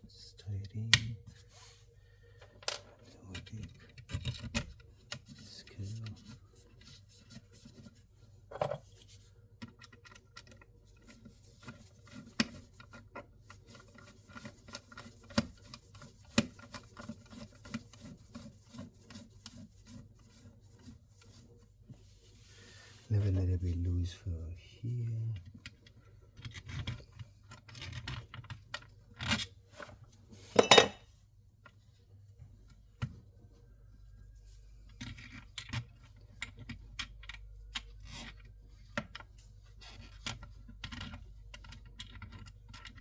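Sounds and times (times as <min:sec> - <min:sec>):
cables clicking and scraping: 0:25.3 - 0:29.5, 0:34.8 - 0:43.0.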